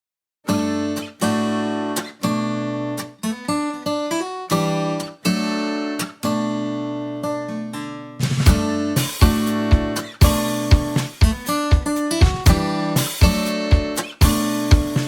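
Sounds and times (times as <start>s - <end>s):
acoustic guitar strumming chords: 0.5s - 15.0s.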